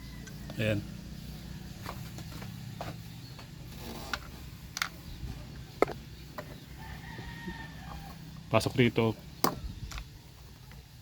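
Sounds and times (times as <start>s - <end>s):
battery handling clicks and knocks: 5.7s - 6.6s, 9.4s - 10.1s.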